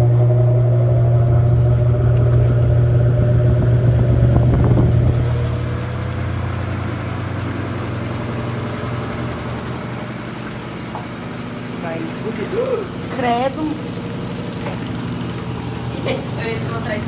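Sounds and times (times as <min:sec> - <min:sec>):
washing machine motor hum: 0:00.0 - 0:17.0.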